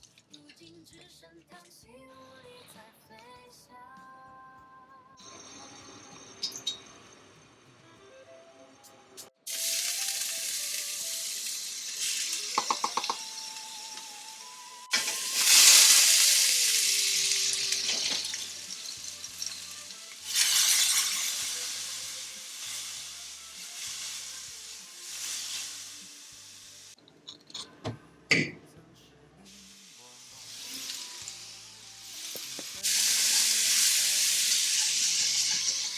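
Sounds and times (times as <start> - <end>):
food sizzling in oiled pan: 9.5 - 27.0, 29.5 - 35.9.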